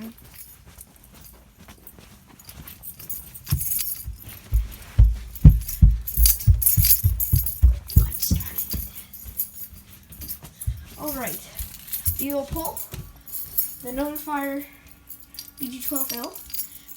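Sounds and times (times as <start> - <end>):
light jingling: 0.0 - 16.9
footsteps thumping up stairs: 2.8 - 14.3.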